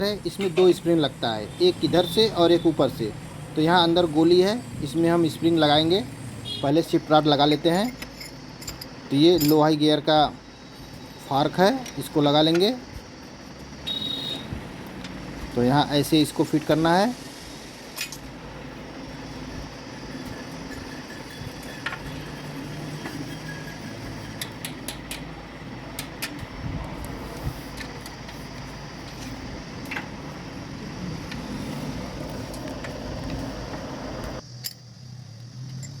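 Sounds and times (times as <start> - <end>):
metallic clicks of gearbox parts: 7.6 - 9.8, 18.0 - 18.3, 22.9 - 25.3.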